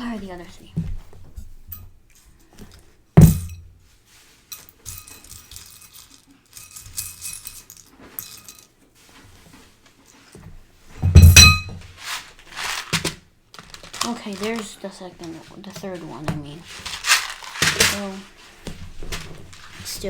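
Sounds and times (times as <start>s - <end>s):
plastic bricks rattling and clicking: 12.0s - 20.0s.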